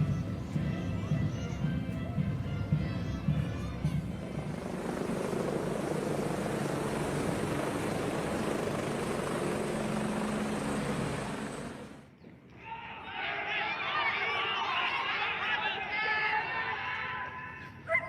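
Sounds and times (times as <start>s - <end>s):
helicopter rotor and engine: 2.3s - 12.1s.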